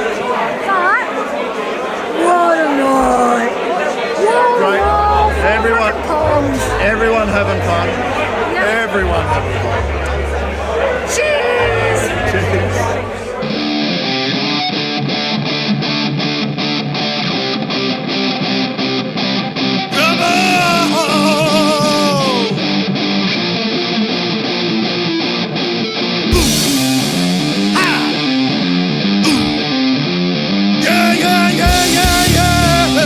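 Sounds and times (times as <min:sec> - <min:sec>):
ska band music: 0:04.8 - 0:14.0, 0:19.9 - 0:22.5, 0:26.3 - 0:29.8, 0:30.8 - 0:33.0
short guitar chords: 0:04.8 - 0:16.8, 0:19.6 - 0:23.0, 0:26.3 - 0:33.0.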